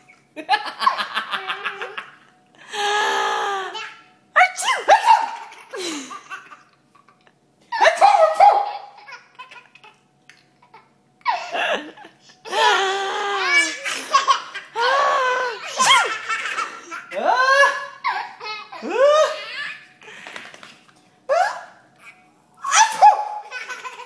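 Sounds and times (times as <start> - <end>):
baby laughing: 4.9 - 10.0, 10.6 - 12.8, 13.4 - 19.8, 22.0 - 24.0.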